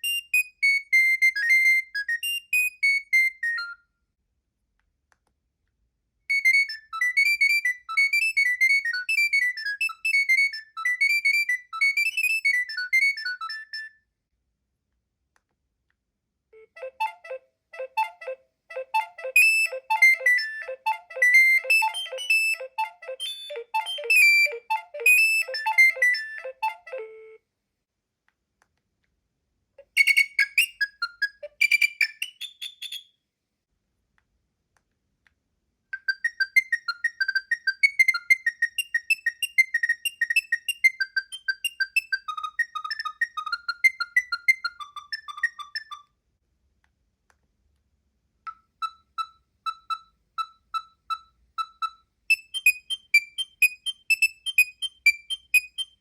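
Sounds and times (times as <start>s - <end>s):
polyphonic ringtone tunes: 16.6s - 27.4s.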